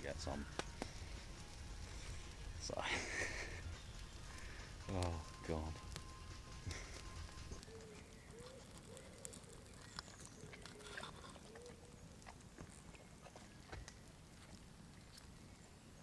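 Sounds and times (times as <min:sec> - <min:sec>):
campfire crackling: 0:00.0 - 0:16.0.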